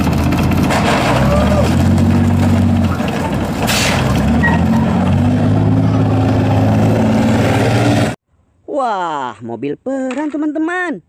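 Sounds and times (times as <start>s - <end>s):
vehicle engine droning: 0.0s - 8.2s.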